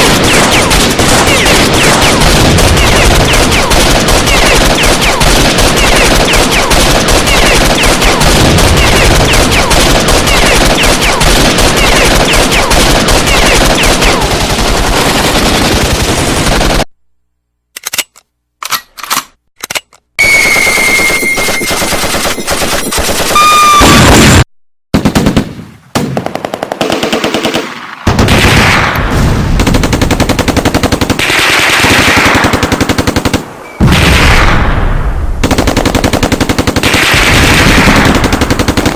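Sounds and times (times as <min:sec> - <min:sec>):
automatic gunfire: 0:00.0 - 0:16.8, 0:25.0 - 0:34.5, 0:35.4 - 0:38.9
short ringing tone: 0:20.2 - 0:22.0.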